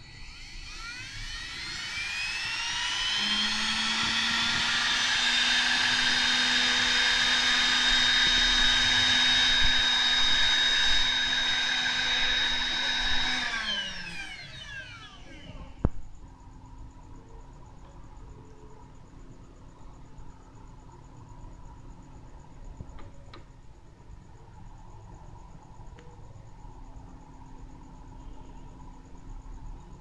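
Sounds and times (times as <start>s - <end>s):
spindle motor whining: 0.0s - 16.0s.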